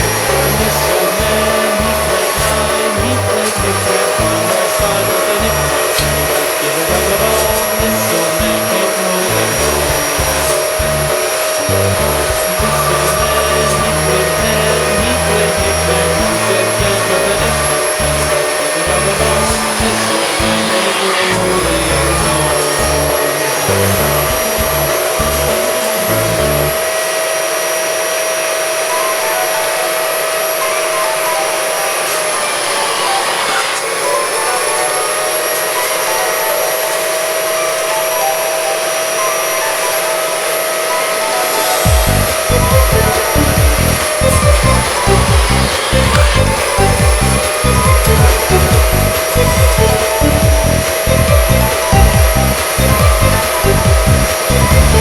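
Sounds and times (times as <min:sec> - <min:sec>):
background music with bass beat: 0:00.0 - 0:26.8, 0:41.8 - 0:55.0
vacuum cleaner whining: 0:00.0 - 0:55.0.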